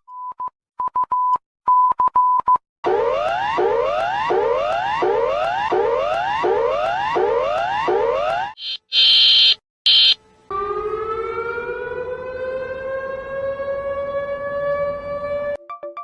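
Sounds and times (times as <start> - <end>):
siren tone rising in pitch: 2.8 - 15.6
harsh buzzer blasts: 8.6 - 10.2.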